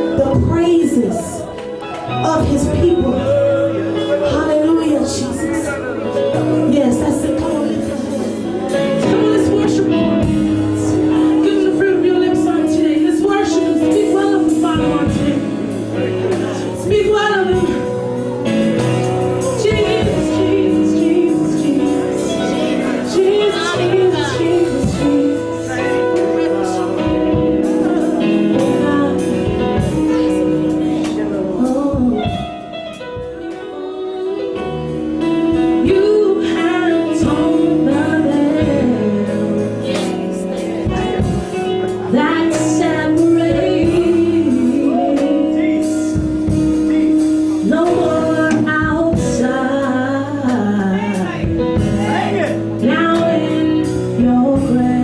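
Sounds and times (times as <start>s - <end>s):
gospel worship music: 0.0s - 55.0s
voices singing: 35.7s - 46.4s, 47.6s - 55.0s.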